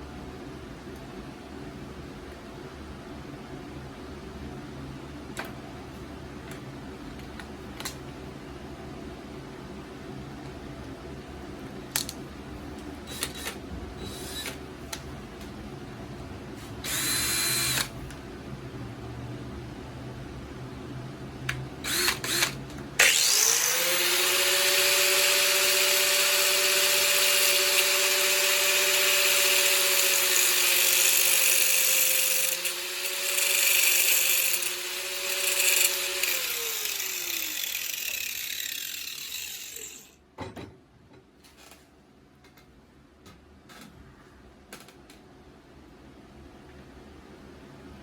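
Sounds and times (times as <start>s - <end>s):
electric power tool whining: 16.8s - 17.9s, 21.8s - 40.2s.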